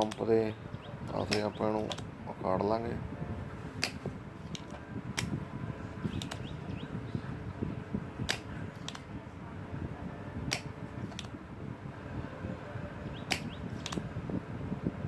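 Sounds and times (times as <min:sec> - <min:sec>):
desoldering pump clicking: 0:00.0 - 0:00.4, 0:01.1 - 0:02.1, 0:06.1 - 0:06.5, 0:13.2 - 0:14.0
low background rumble: 0:00.0 - 0:15.0.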